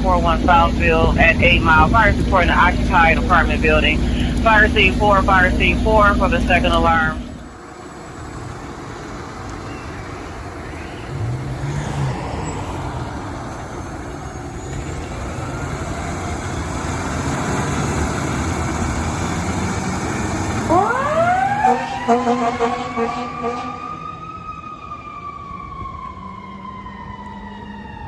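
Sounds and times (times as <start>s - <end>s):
fire truck engine running: 0.0s - 28.0s
siren winding up: 20.7s - 24.4s.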